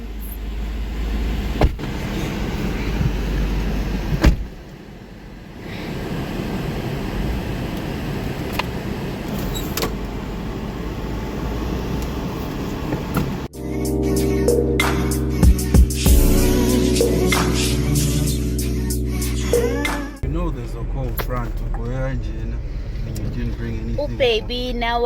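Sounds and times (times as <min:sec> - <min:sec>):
car engine rumbling: 0:00.0 - 0:25.0
loud thump: 0:01.6 - 0:01.9, 0:04.1 - 0:04.5.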